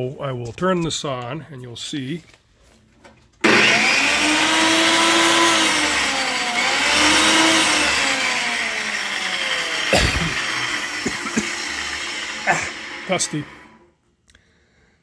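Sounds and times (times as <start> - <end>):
table saw motor whining: 3.4 - 13.9.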